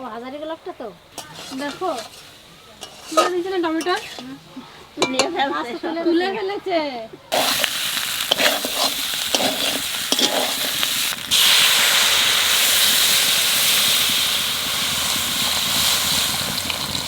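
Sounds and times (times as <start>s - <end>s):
chicken sizzling in a pan: 1.0s - 5.2s, 7.3s - 17.0s
steam hissing: 1.0s - 5.2s, 7.3s - 17.0s
spoon clinking: 1.2s - 4.4s, 5.0s - 5.4s, 7.3s - 11.0s
water pouring: 7.3s - 17.0s.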